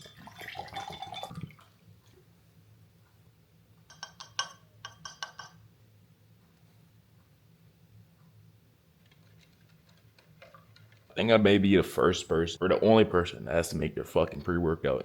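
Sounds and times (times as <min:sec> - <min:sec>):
glass bottle clinking: 0:00.0 - 0:01.5
liquid sloshing: 0:00.0 - 0:01.8.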